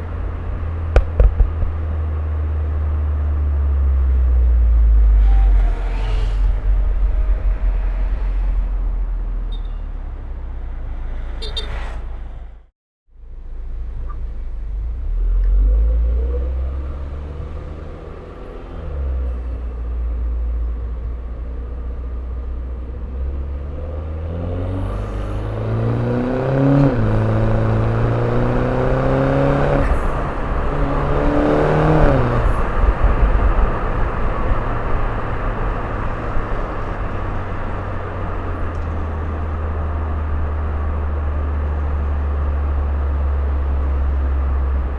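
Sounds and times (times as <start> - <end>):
car engine accelerating: 13.3 - 44.9.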